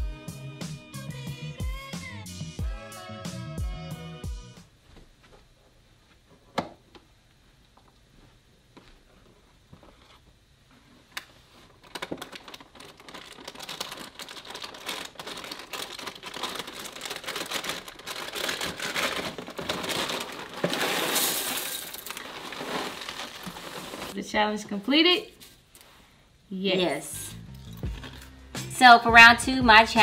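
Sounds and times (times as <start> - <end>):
cereal pouring into a bowl: 12.0 - 24.2.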